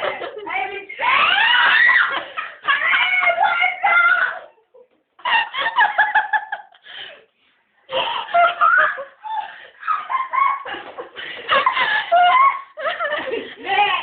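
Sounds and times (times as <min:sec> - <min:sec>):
young women laughing: 0:04.6 - 0:06.8, 0:07.9 - 0:14.0.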